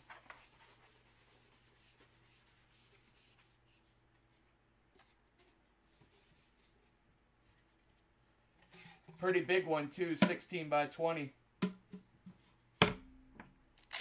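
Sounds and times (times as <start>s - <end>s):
faint rubbing and rustling: 0.0s - 10.3s.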